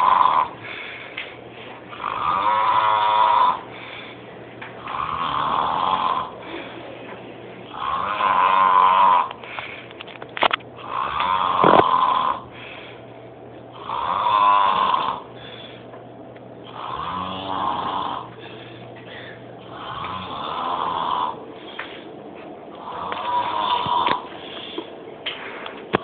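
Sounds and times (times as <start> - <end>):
man snoring loudly: 0.0 - 0.6, 1.9 - 3.7, 4.8 - 6.4, 7.7 - 9.4, 10.8 - 12.4, 13.7 - 15.3, 16.6 - 18.3, 19.6 - 21.4, 22.8 - 24.3.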